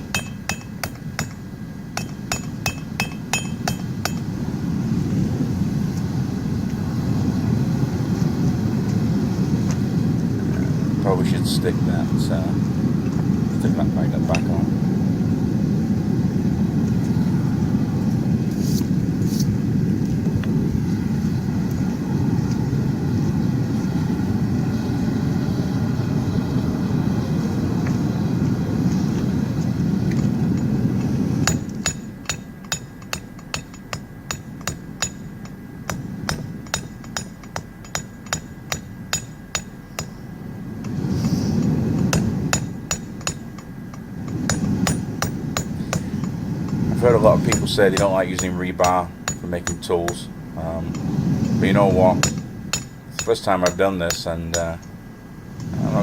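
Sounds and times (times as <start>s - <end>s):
hammer blows on steel anvil: 0.0s - 4.3s, 31.4s - 54.9s
propane burners rushing: 0.0s - 56.0s.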